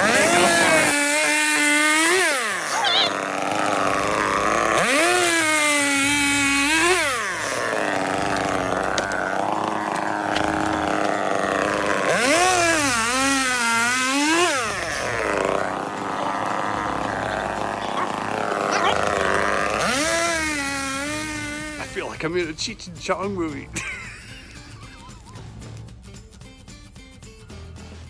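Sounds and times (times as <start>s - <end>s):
chainsaw revving and idling: 0.0s - 25.7s.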